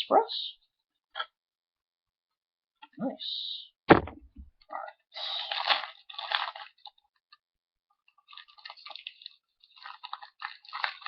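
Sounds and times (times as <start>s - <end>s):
foil wrapper crinkling and tearing: 5.2s - 7.3s, 8.1s - 11.0s.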